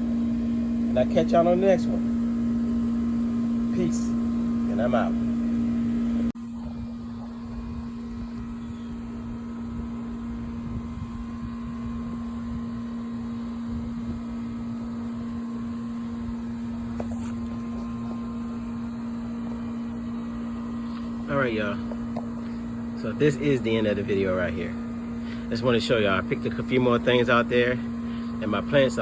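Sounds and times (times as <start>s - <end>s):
mechanical hum with low tone: 0.0s - 29.0s.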